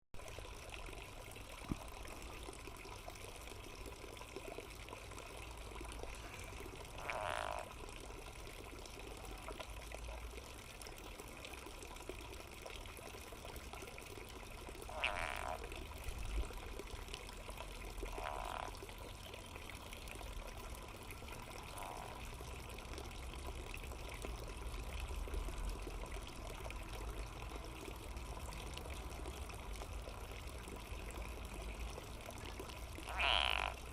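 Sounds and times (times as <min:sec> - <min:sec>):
frog distress calls: 0:06.2 - 0:07.8, 0:14.9 - 0:15.7, 0:18.1 - 0:18.8, 0:21.6 - 0:22.3, 0:33.0 - 0:33.9.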